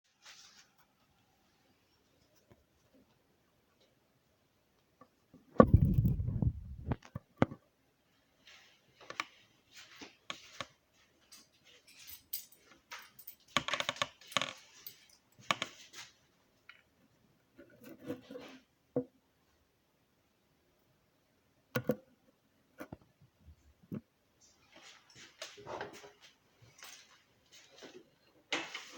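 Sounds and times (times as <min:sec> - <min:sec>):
metallic jingling and rattling: 0:11.2 - 0:16.0.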